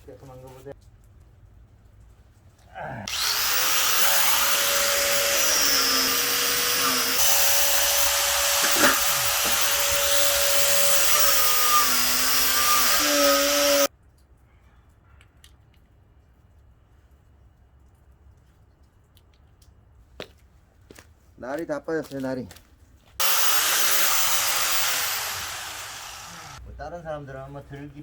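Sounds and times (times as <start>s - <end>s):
power tool motor whine: 3.1s - 13.9s, 23.2s - 26.6s
wire brush grinding on metal: 3.1s - 13.9s.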